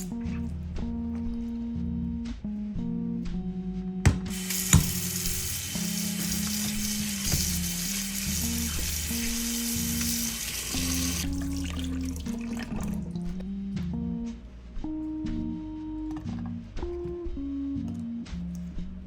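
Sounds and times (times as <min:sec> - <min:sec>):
water running from a tap: 0:04.3 - 0:13.2.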